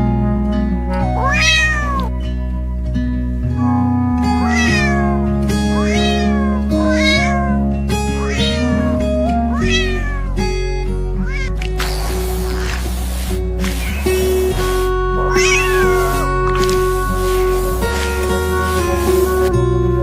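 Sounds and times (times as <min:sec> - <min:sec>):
background music: 0:00.0 - 0:20.0
cat meowing: 0:01.0 - 0:02.1, 0:04.4 - 0:10.4, 0:11.1 - 0:12.9, 0:15.2 - 0:19.3.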